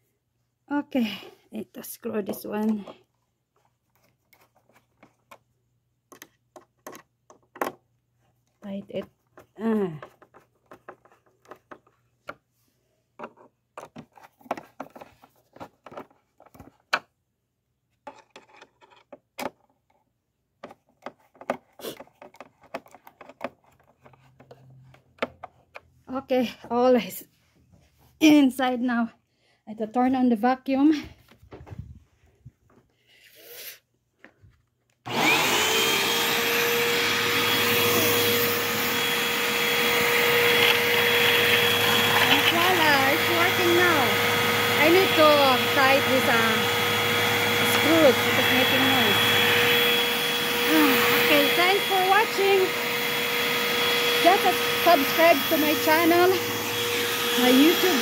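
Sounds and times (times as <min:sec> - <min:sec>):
faint handling sounds: 0:02.0 - 0:16.9
screwdriver clicking and scraping: 0:20.6 - 0:24.6, 0:39.0 - 0:44.0
vacuum cleaner motor whine: 0:35.1 - 0:58.0.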